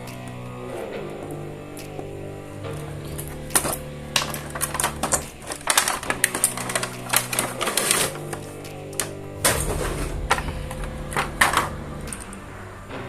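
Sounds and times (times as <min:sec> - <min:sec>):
background music with held notes: 0:00.0 - 0:13.0
plastic toy pieces clicking: 0:03.5 - 0:09.2.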